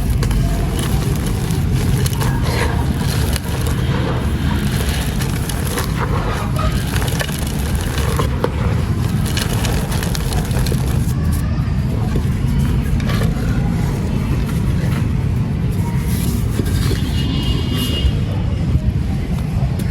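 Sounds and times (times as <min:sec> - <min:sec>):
sand-cement crunching: 0:00.0 - 0:17.4
deep steady rumble: 0:00.0 - 0:19.9.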